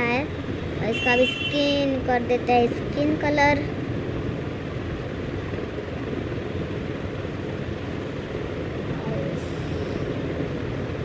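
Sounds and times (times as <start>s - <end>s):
low rumbling background noise: 0.0s - 11.0s.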